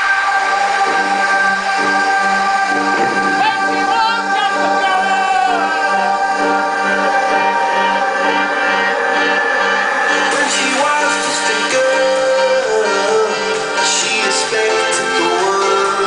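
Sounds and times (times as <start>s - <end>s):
loud dance music: 0.0s - 16.0s.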